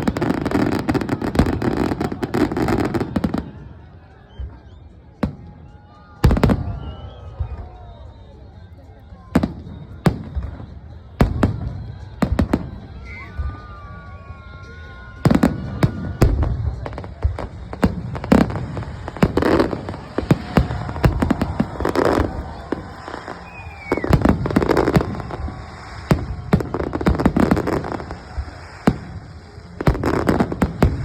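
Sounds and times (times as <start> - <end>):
firework crackling: 0.0 - 3.8, 9.7 - 31.0
firework whistling: 5.6 - 8.6, 9.3 - 31.0
firework bangs: 15.2 - 31.0.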